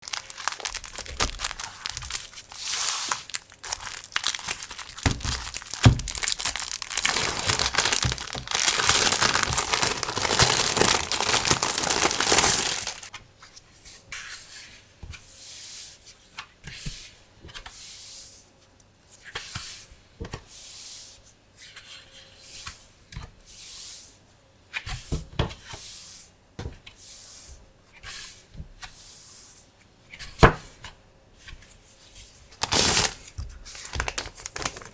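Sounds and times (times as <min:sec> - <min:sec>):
packaging tearing and crinkling: 0:00.0 - 0:13.1, 0:32.6 - 0:34.9
paper or plastic rustling: 0:00.0 - 0:13.1, 0:32.3 - 0:34.9.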